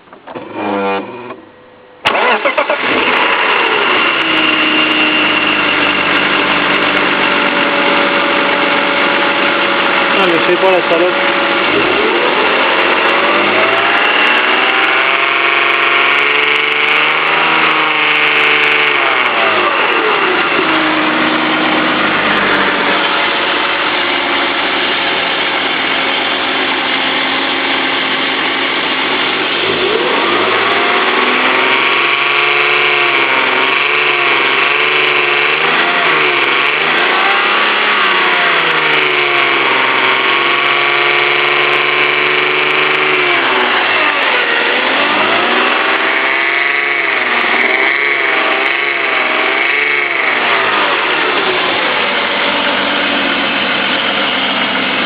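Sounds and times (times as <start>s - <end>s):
abnormal engine noise: 0.0s - 55.0s
car engine revving: 0.0s - 55.0s.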